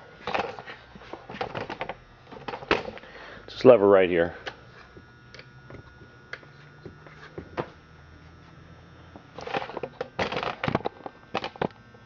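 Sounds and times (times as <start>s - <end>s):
rustling and scraping: 0.2s - 3.0s, 5.9s - 8.6s, 9.2s - 11.8s.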